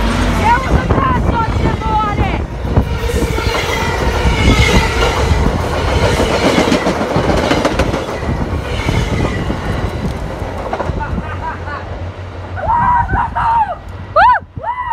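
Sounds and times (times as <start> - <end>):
train rumble: 0.0 - 14.9
train wheels clacking over joints: 3.4 - 11.2.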